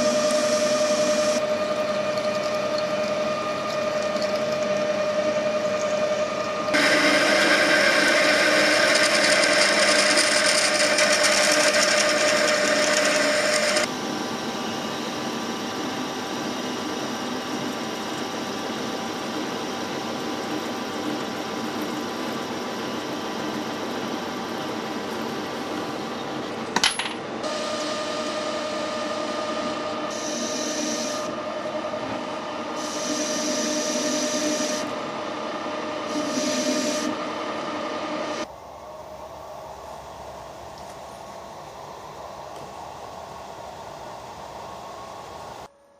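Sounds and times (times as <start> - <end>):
hissing cutting: 6.7 - 13.9
machine tool cutting steel: 6.8 - 13.9.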